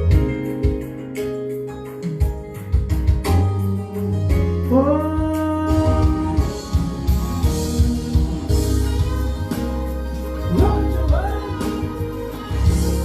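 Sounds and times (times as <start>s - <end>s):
song with vocals and beat: 0.0s - 13.0s.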